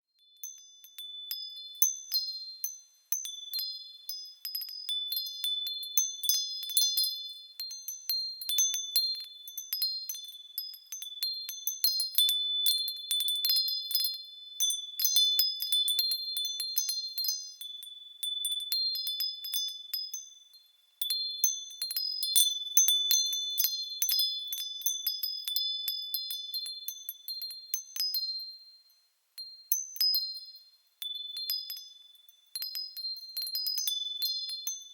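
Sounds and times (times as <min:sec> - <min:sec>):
wind chimes tinkling: 0:00.1 - 0:34.9.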